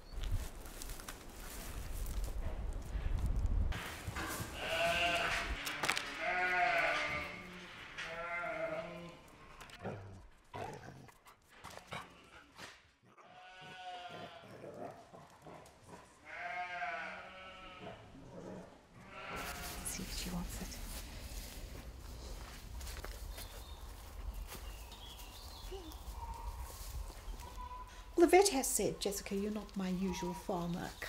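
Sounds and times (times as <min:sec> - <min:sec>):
sheep bleating: 0:04.6 - 0:09.3, 0:13.1 - 0:14.8, 0:16.2 - 0:18.0, 0:19.0 - 0:19.8.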